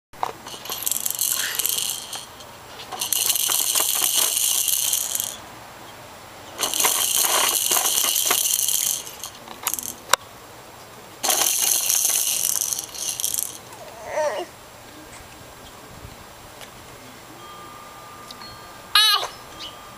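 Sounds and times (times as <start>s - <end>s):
rattle shaken: 0.2s - 5.4s, 6.6s - 10.1s, 11.2s - 13.8s.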